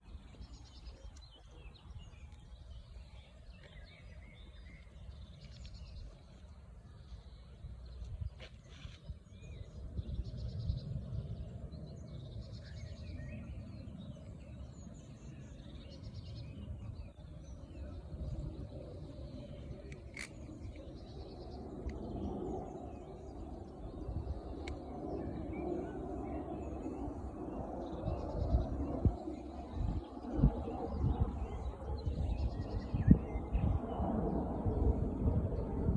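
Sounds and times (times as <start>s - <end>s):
steady low rumble: 0.0s - 35.9s
small birds chirping: 0.2s - 33.8s
small sharp clicks: 19.8s - 20.8s, 24.6s - 24.8s.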